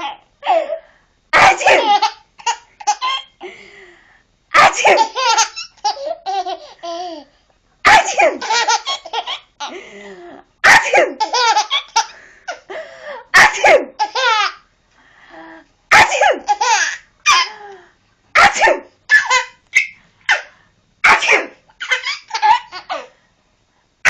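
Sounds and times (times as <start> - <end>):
small child laughing: 1.6 - 3.4, 21.8 - 23.1.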